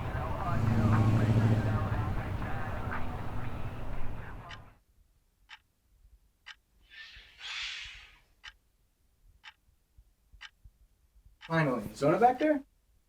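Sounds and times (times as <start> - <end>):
faint steady ticking: 0.0 - 7.2, 7.9 - 13.0
soft rushing hiss: 6.8 - 8.4.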